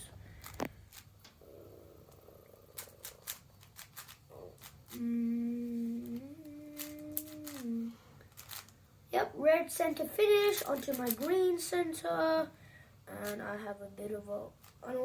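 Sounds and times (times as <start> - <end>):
puzzle cube plastic clicks: 2.7 - 5.0, 6.0 - 7.7, 8.3 - 8.7, 10.4 - 11.4
person humming: 4.3 - 8.1.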